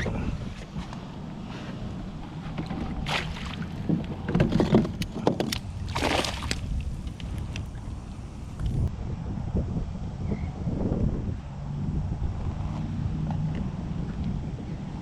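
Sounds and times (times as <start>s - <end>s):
water splashing around a kayak: 2.7s - 8.9s.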